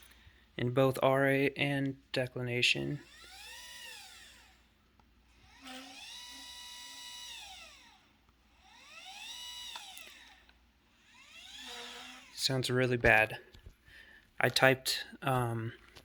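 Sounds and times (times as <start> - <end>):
motor whine rising and falling: 3.0 - 12.7.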